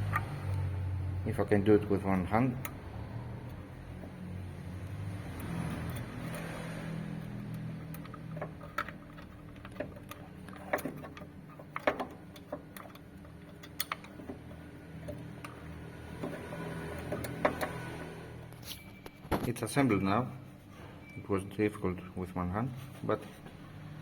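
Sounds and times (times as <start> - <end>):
small metal parts clicking: 4.8 - 17.9.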